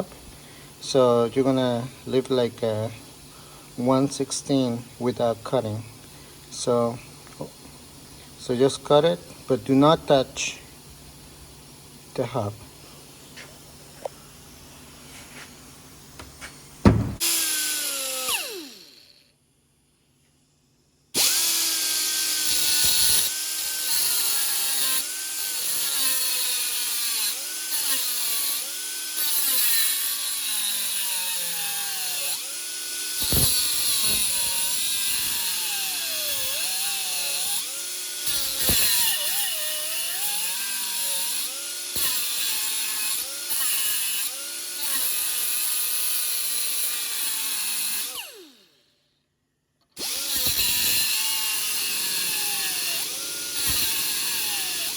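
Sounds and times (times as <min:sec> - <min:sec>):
power tool grinding metal: 0:16.8 - 0:19.2, 0:21.2 - 0:48.7, 0:50.0 - 0:54.9.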